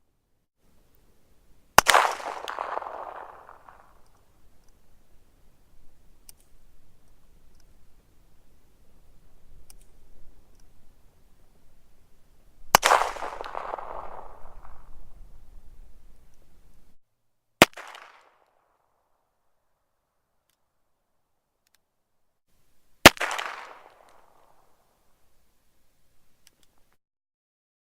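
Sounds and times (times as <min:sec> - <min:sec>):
handgun gunshots with echo: 0:01.8 - 0:04.0, 0:12.7 - 0:14.9, 0:23.1 - 0:24.4.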